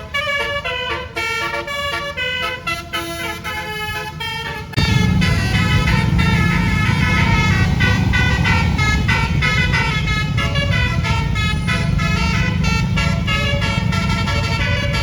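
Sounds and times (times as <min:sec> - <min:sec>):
bus engine rumble: 0:00.0 - 0:15.0
bus musical horn melody: 0:00.0 - 0:15.0.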